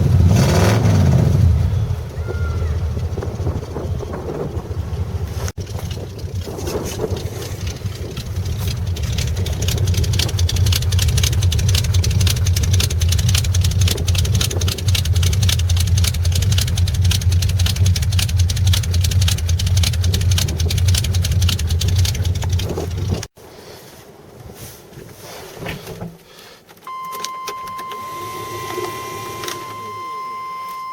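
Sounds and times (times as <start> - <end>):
pickup engine fast idle: 1.6 - 23.3.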